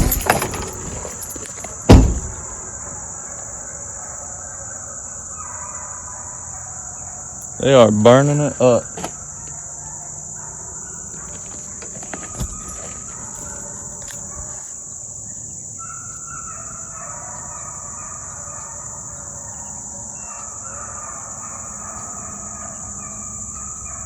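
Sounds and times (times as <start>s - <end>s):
short knocks: 0.0s - 2.7s
crickets droning: 0.0s - 24.0s
distant hounds baying: 0.0s - 24.0s.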